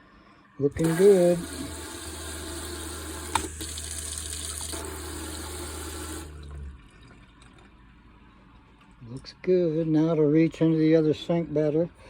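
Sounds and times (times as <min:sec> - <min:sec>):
low steady hum: 0:00.0 - 0:12.0
water running into sink: 0:00.7 - 0:07.8.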